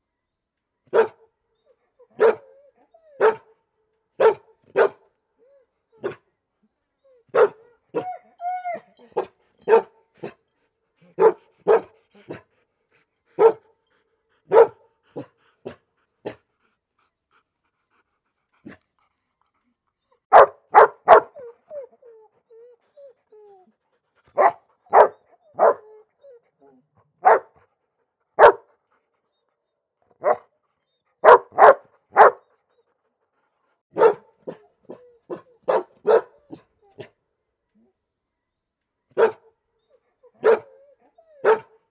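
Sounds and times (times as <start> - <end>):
dog barking: 0.9 - 1.2, 2.2 - 2.5, 3.2 - 3.5, 4.2 - 5.0, 7.3 - 7.6, 9.7 - 10.4, 11.2 - 11.9, 13.4 - 13.6, 14.5 - 15.3, 20.3 - 21.4, 24.4 - 25.8, 27.2 - 27.6, 28.4 - 28.7, 30.2 - 30.5, 31.2 - 32.4, 33.9 - 34.6, 35.3 - 36.6, 39.2 - 39.4, 40.4 - 40.7, 41.4 - 41.7.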